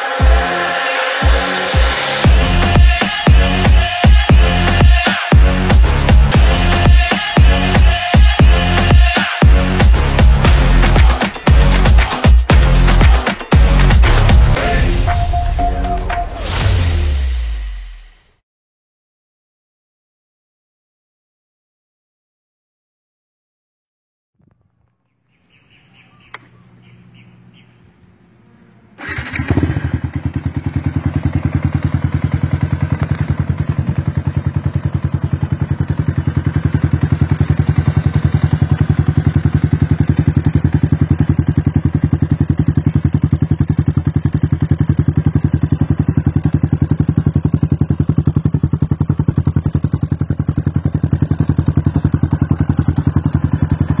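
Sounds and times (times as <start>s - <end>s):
motorcycle engine idling: 2.2s - 14.6s, 25.4s - 54.0s
faint hum: 24.7s - 29.1s
starter click: 26.0s - 26.9s.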